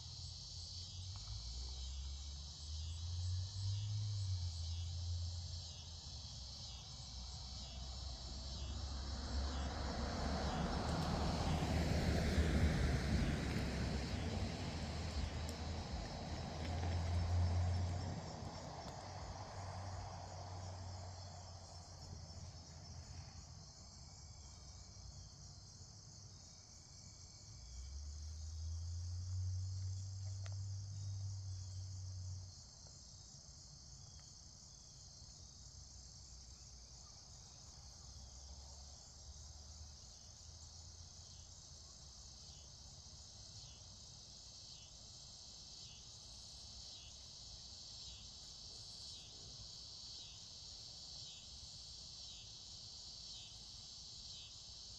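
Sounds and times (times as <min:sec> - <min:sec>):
crickets trilling: 0:00.0 - 0:54.9.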